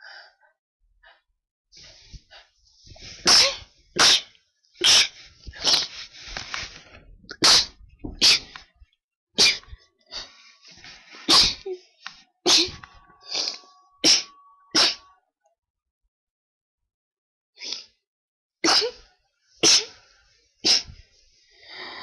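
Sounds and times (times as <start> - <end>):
person sneezing: 3.2 - 6.0, 7.4 - 8.5, 9.4 - 10.3, 11.2 - 11.8, 12.5 - 15.1, 18.6 - 19.0, 19.6 - 20.0, 20.6 - 21.0.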